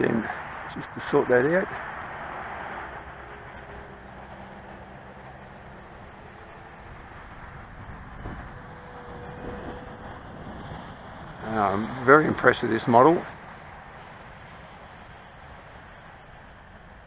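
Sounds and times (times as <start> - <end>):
high whine of electric motor: 1.8 - 11.7.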